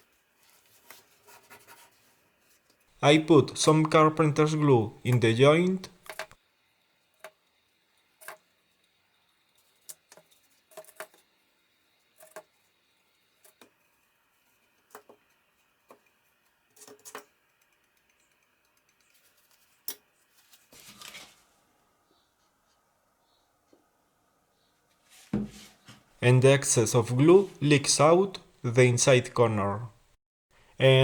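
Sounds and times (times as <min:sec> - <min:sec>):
rubbing scrape: 0:25.0 - 0:26.1.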